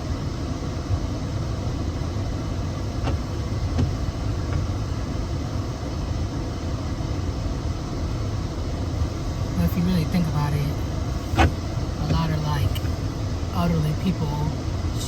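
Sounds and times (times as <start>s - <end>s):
car engine and road rumble: 0.0s - 15.0s.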